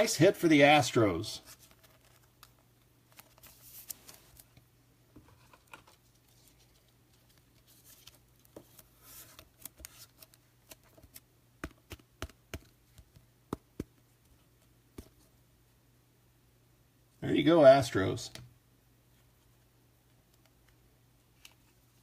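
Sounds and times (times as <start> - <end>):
cards rustling in plastic sleeves: 0.8 - 4.6, 5.3 - 15.3.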